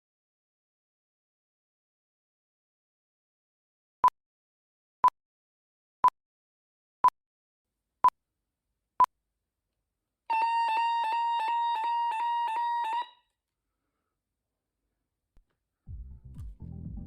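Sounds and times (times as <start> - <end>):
pulsing electronic alarm tone: 10.3 - 13.2.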